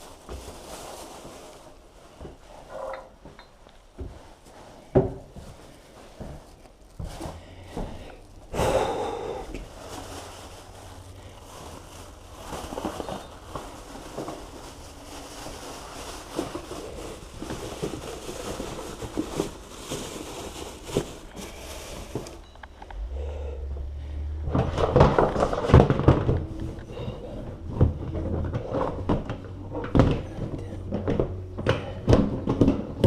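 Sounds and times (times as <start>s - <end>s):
knocks and rustling of handling: 0.0s - 8.5s, 9.5s - 23.1s, 23.8s - 33.0s
man breathing heavily: 7.2s - 10.2s, 23.0s - 24.5s, 26.7s - 27.7s.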